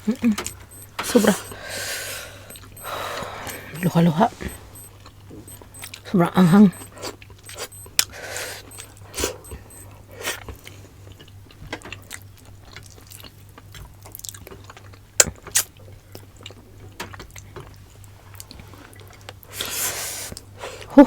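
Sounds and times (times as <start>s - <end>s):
short clicks: 0.4s - 1.6s, 2.5s - 4.9s, 5.5s - 5.9s
close chewing and mouth sounds: 12.7s - 16.6s.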